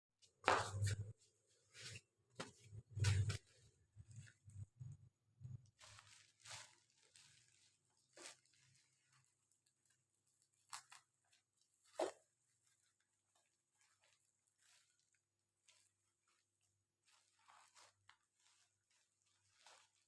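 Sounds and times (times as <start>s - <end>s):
packaging rustling: 5.7s - 20.0s.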